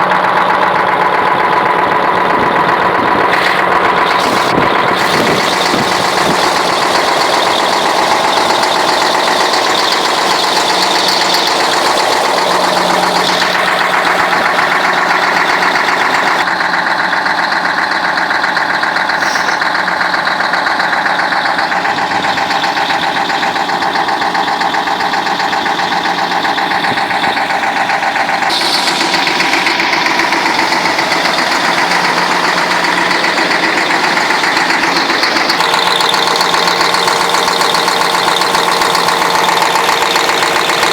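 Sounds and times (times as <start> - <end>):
diesel truck engine running: 0.0 - 40.9.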